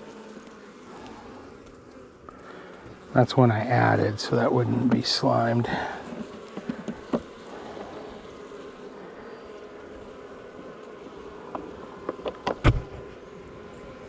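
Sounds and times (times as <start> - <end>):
honeybees buzzing: 0.0 - 14.0
sharp knocks: 12.4 - 13.1.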